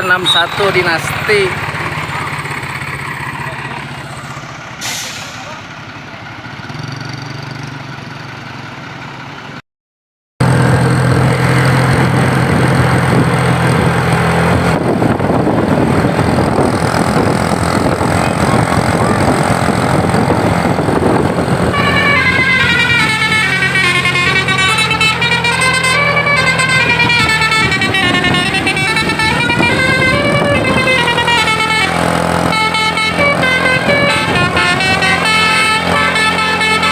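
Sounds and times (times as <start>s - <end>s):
bus engine drone: 0.0s - 9.6s, 10.4s - 36.9s
road noise rushing: 0.0s - 9.6s, 10.4s - 36.9s
bus horn playing melody: 19.7s - 36.9s.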